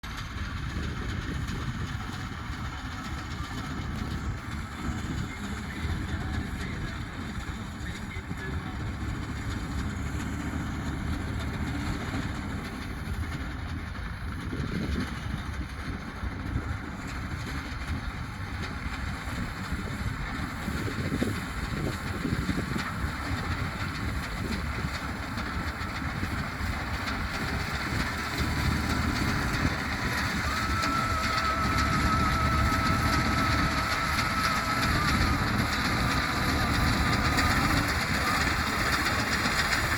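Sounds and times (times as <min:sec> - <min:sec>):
diesel tractor engine running: 0:00.0 - 0:39.9
thin steady whine: 0:17.8 - 0:39.9.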